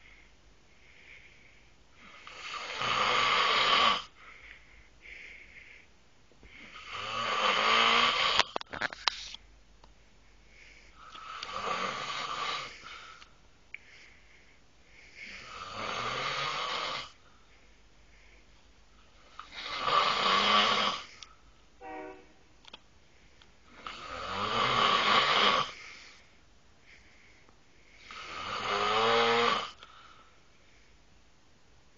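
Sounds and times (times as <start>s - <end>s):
man snoring loudly: 2.1s - 4.1s, 6.7s - 8.5s, 11.2s - 12.8s, 15.2s - 17.2s, 19.5s - 21.1s, 23.8s - 25.8s, 28.1s - 29.8s.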